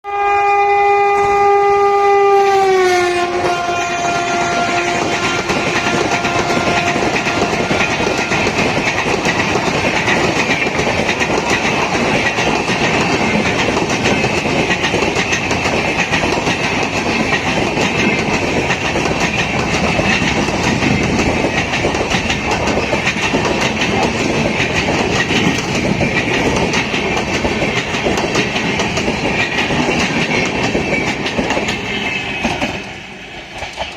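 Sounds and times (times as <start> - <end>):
locomotive horn blast: 0.0 - 8.6
train wheels clattering on rails: 3.1 - 33.9.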